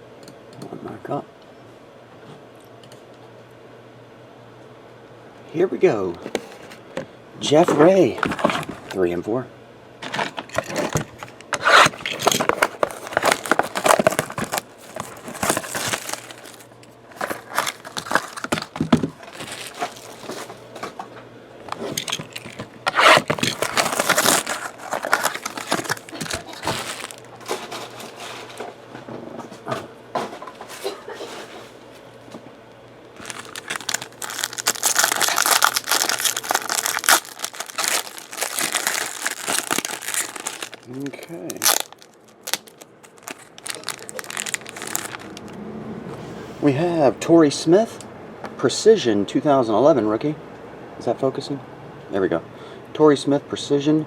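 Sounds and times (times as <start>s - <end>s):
packs rustling: 7.6s - 9.0s, 10.0s - 21.0s, 21.7s - 28.7s, 33.2s - 45.5s
shrink-wrap and cardboard tearing: 7.8s - 9.0s, 10.0s - 20.6s, 21.7s - 28.6s, 33.2s - 45.5s.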